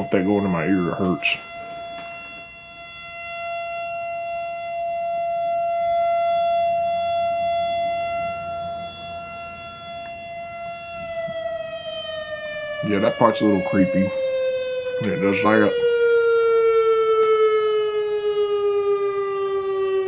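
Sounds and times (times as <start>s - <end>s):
warning siren wailing: 0.0s - 20.0s.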